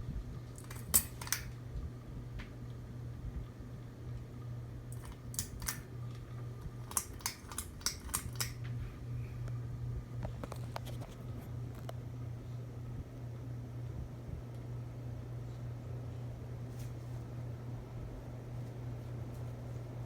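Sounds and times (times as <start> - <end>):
ceiling fan motor hum: 0.0 - 20.0
sharp clicks: 4.9 - 5.8, 6.9 - 8.6.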